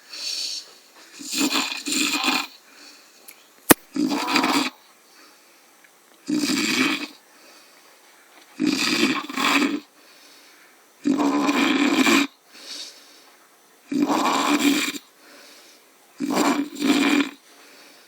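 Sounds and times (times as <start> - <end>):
soft breath: 0.0 - 1.2, 2.6 - 3.5, 5.0 - 5.8, 7.2 - 8.4, 9.9 - 10.9, 12.5 - 13.5, 15.2 - 16.0, 17.4 - 18.0
man snoring: 6.3 - 7.2, 8.6 - 9.9, 11.0 - 12.3, 13.9 - 15.1, 16.2 - 17.4.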